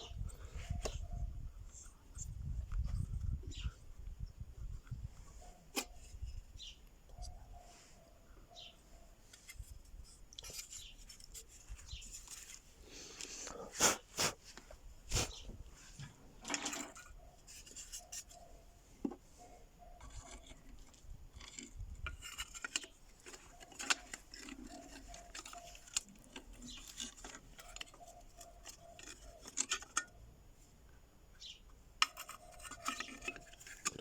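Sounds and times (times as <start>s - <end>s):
metal parts clicking and clinking: 16.4s - 18.4s, 20.0s - 30.2s, 32.0s - 34.0s.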